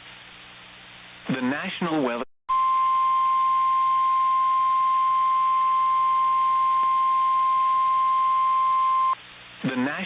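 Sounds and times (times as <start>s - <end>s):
steady high warning tone: 2.5s - 9.2s.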